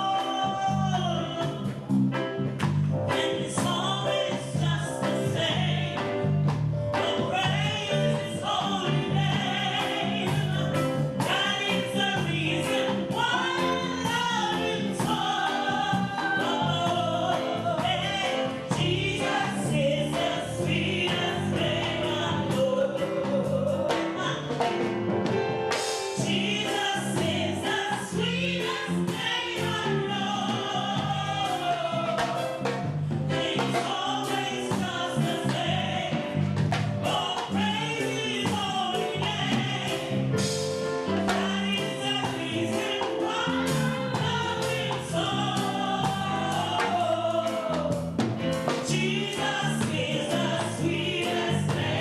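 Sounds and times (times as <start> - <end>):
steady bass line: 0.0 - 23.9, 26.2 - 52.0
gospel choir singing: 0.0 - 52.0.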